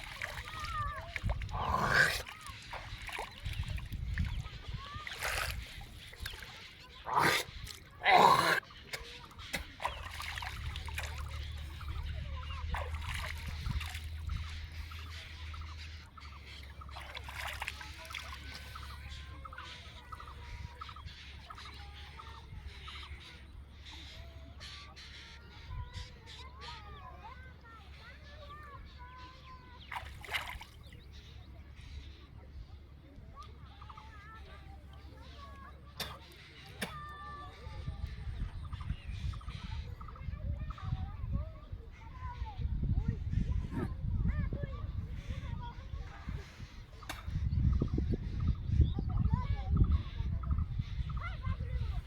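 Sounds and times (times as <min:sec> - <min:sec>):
water splashing: 0:00.0 - 0:15.9, 0:16.5 - 0:20.3, 0:29.9 - 0:31.0
birds calling: 0:00.0 - 0:52.0.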